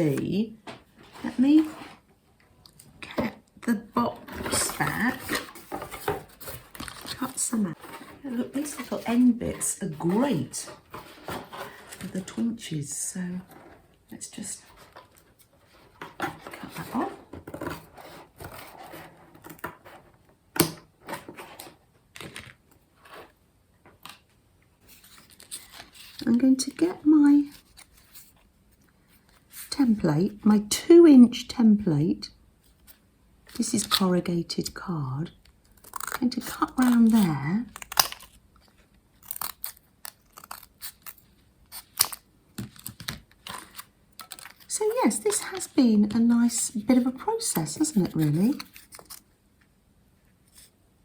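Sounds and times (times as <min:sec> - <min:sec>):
scissors snipping paper: 0:35.8 - 0:38.4, 0:39.2 - 0:42.2
corrugated card being cut: 0:39.2 - 0:42.2.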